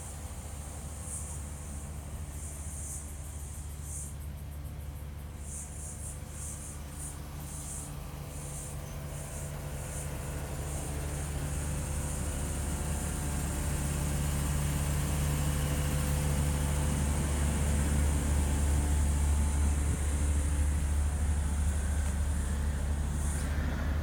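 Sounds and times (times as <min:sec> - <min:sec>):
low mechanical hum: 0:00.0 - 0:24.0
crickets trilling: 0:01.0 - 0:13.1.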